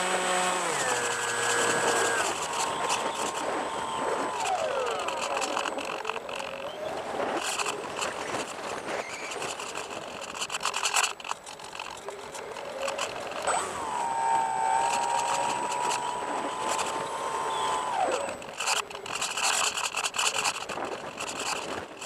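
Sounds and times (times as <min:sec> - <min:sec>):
crackling: 0:00.0 - 0:22.0
model plane electric motor whining: 0:00.0 - 0:22.0
wind rush: 0:00.1 - 0:06.1.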